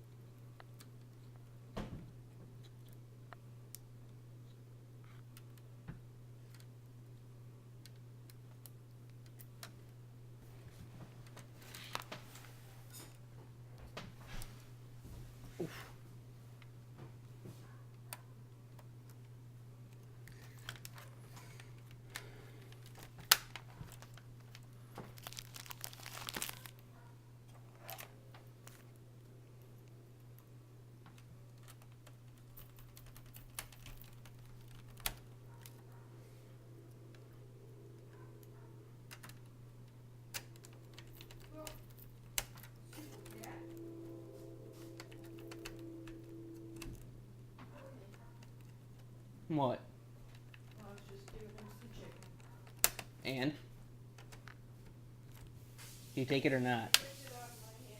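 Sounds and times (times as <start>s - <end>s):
low hum: 14.6s - 56.2s
crinkling: 17.6s - 29.0s, 31.0s - 36.2s, 50.2s - 53.4s.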